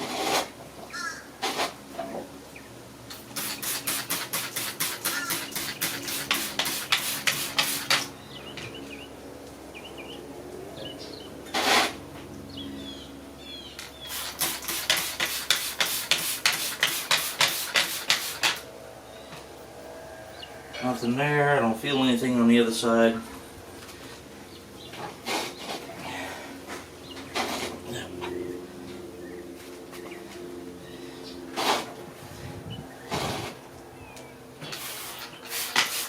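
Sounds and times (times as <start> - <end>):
trigger spray bottle spraying: 3.1 - 8.1, 14.1 - 18.6, 34.7 - 36.0.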